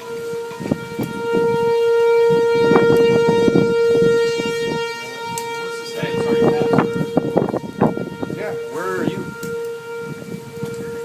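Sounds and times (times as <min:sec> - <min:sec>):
warning siren steady tone: 0:00.0 - 0:11.0.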